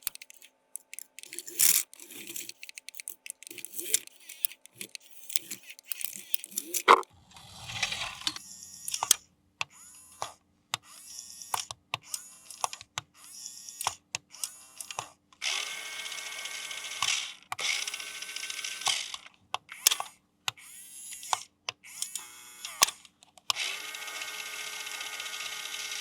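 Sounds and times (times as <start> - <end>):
plastic toy parts clicking: 0.0 - 7.1, 18.8 - 20.1.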